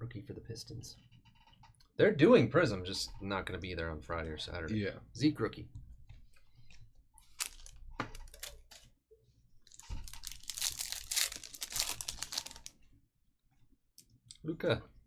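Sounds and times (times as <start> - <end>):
card pack wrapper crinkling and tearing: 7.2 - 8.8, 9.7 - 12.8.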